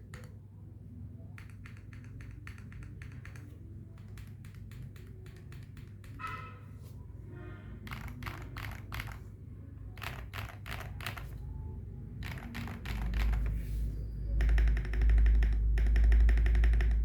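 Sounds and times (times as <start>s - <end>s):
mechanical keyboard typing: 0.0s - 0.4s, 1.3s - 6.4s, 7.8s - 9.3s, 9.9s - 11.5s, 12.1s - 17.0s.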